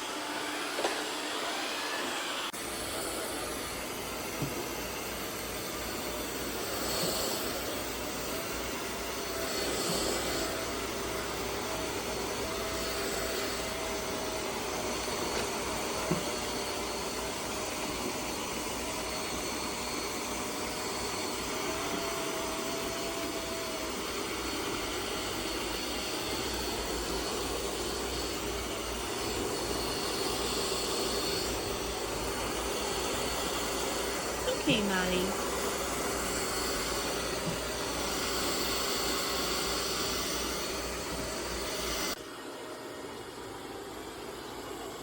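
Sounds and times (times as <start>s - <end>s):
robot vacuum suction hiss: 0.0s - 8.4s.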